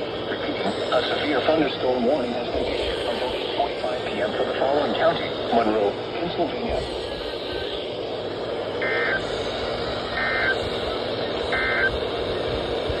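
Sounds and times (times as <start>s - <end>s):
radio hiss: 0.0s - 13.0s
warbling digital data tones: 8.8s - 12.5s.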